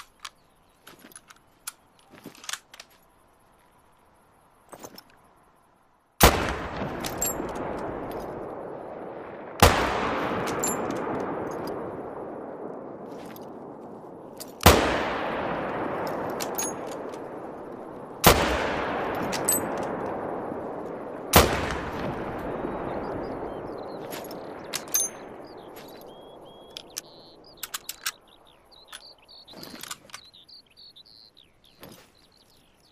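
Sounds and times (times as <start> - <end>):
rifle bolt metallic clicks: 0.0 - 3.0, 10.4 - 11.8, 16.0 - 17.3, 19.2 - 20.2, 24.1 - 25.2, 26.7 - 30.4
rifle shots with rolling echo: 6.2 - 28.9
faint bird chirps: 22.6 - 32.9.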